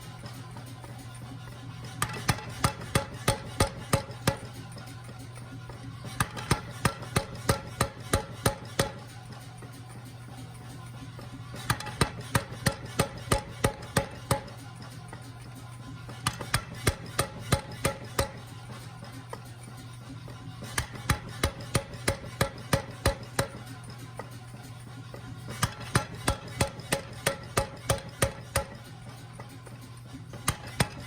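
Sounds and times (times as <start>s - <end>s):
power hammer striking hot steel: 2.0s - 4.6s, 6.1s - 9.1s, 11.6s - 14.6s, 16.2s - 18.5s, 20.6s - 23.7s, 25.5s - 28.9s, 30.3s - 31.0s.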